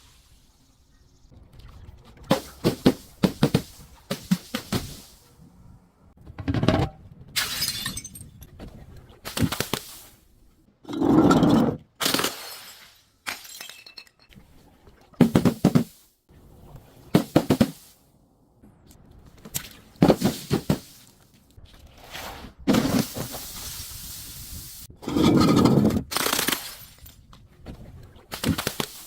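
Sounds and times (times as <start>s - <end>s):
glass bottles shattering: 7.4s - 8.3s, 12.0s - 14.3s.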